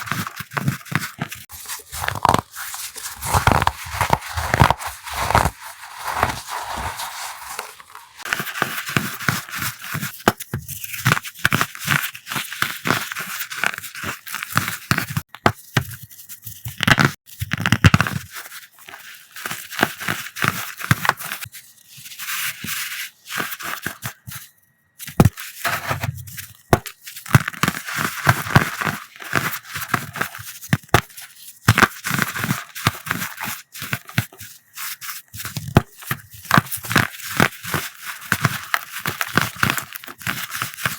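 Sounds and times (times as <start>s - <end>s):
powder blocks crushed by hand: 1.5s - 8.3s.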